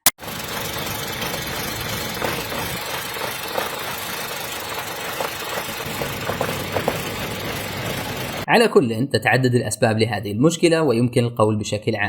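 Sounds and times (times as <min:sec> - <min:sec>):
car engine idling roughly: 0:00.1 - 0:08.5.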